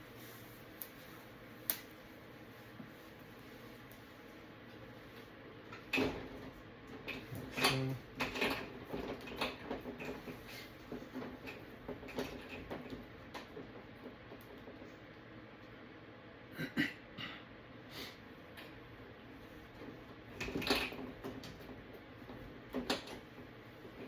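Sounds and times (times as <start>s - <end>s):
light clicks and clatters: 3.8s - 15.8s, 19.4s - 24.0s.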